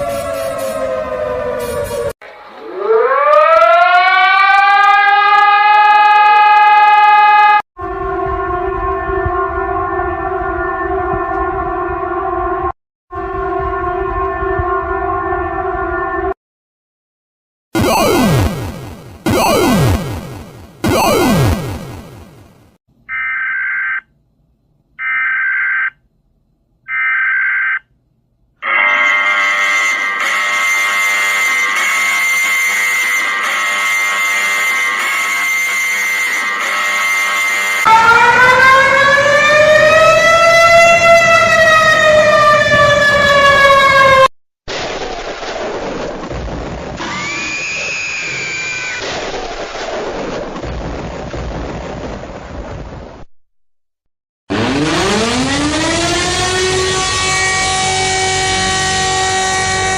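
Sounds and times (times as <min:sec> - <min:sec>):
civil defense sirens wailing: 0:00.0 - 0:16.4, 0:17.8 - 0:22.2, 0:28.6 - 0:44.3, 0:54.5 - 0:59.9
electronic alarm long beeps: 0:17.8 - 0:22.4
continuous harsh alarm tone: 0:17.8 - 0:22.7, 0:28.6 - 0:44.3, 0:54.5 - 0:59.9.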